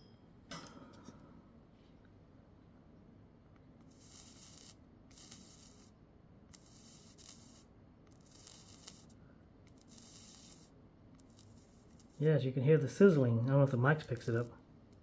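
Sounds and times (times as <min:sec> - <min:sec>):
flux sizzling: 0:03.9 - 0:05.9, 0:08.2 - 0:09.1, 0:09.7 - 0:12.2.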